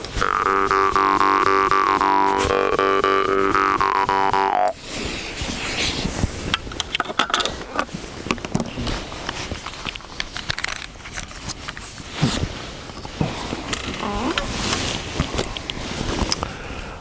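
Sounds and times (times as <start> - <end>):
scraping and rustling: 4.8 - 16.5.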